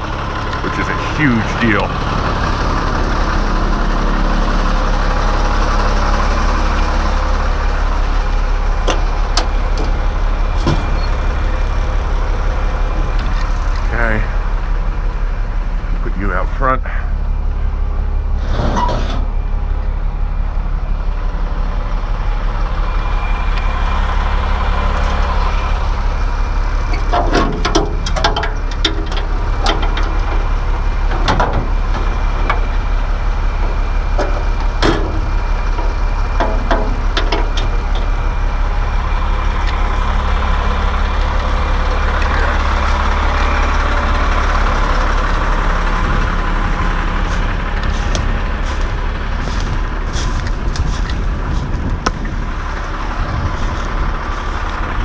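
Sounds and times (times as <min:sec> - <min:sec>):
vehicle engine idling: 0:00.0 - 0:55.0
knocks and clatters: 0:26.9 - 0:30.4, 0:31.1 - 0:32.7, 0:34.2 - 0:38.1.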